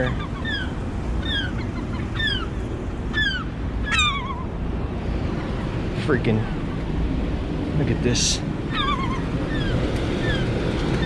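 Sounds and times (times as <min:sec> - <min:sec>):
gull calling: 0:00.0 - 0:04.6, 0:08.7 - 0:11.0
wind rumble on microphone: 0:00.0 - 0:11.0.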